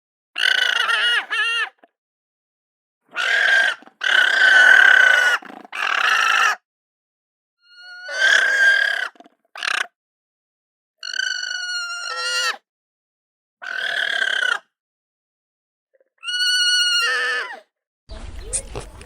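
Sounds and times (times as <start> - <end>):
short high-pitched animal calls: 7.6 - 9.9.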